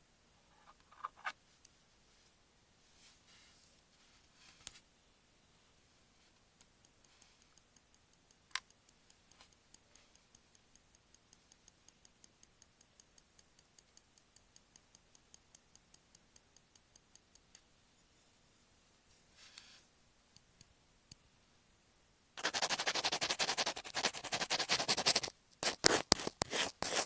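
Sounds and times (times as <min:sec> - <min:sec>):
tweezer tips tapping on tape: 0:22.4 - 0:27.0.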